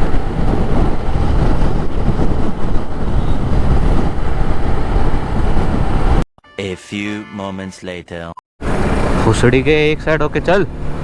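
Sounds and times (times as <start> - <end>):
wind buffeting microphone: 0.0 - 6.2.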